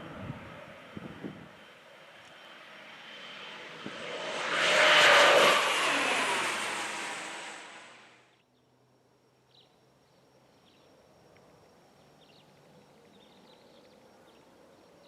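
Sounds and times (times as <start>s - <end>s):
turboprop plane passing low: 0.0s - 8.2s.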